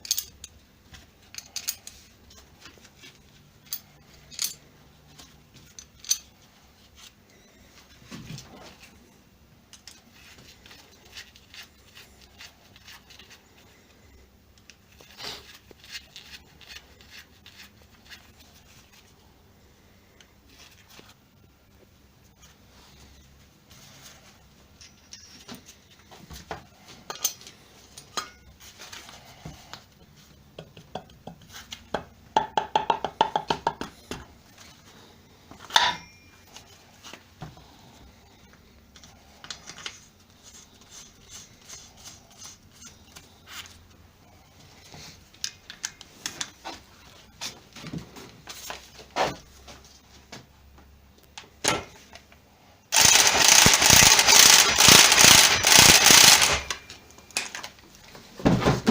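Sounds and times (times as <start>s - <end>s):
metal parts clicking and knocking: 0.0s - 0.6s, 1.2s - 2.4s, 3.6s - 4.7s, 5.6s - 6.4s, 52.9s - 57.7s
loud steady noise: 52.9s - 56.8s.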